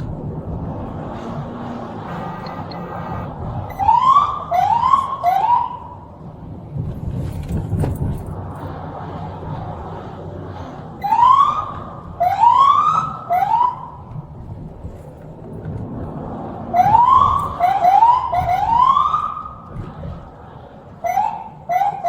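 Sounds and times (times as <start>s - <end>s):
vehicle rumble: 0.0s - 22.0s
police siren whoops: 2.0s - 6.1s, 11.0s - 14.0s, 16.7s - 19.7s, 21.0s - 22.0s.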